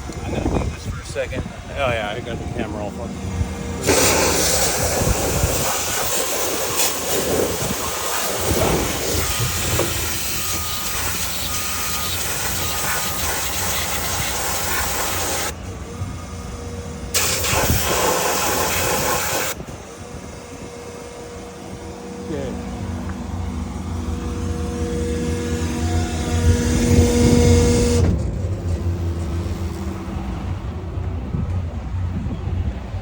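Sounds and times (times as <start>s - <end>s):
engine humming: 0.0s - 33.0s
pressure washer spraying: 3.8s - 15.5s, 17.2s - 19.6s.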